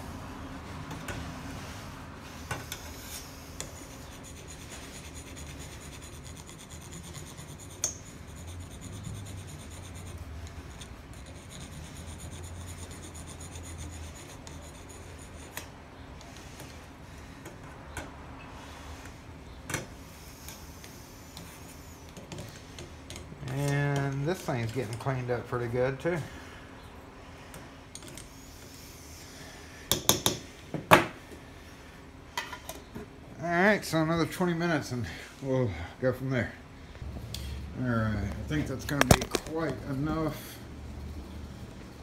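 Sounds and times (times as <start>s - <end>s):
rasping rub on padlock: 2.6s - 15.6s.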